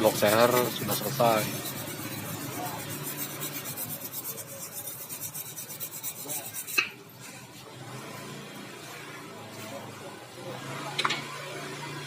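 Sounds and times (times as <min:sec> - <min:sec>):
hand tool scraping metal: 0:00.0 - 0:07.0.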